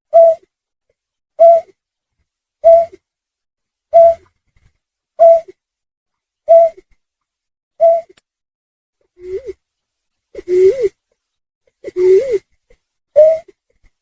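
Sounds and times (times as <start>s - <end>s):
low-pitched bird lure call: 0.1s - 0.4s, 2.6s - 3.0s, 3.9s - 4.2s, 5.2s - 5.5s, 6.5s - 6.8s, 7.8s - 8.2s.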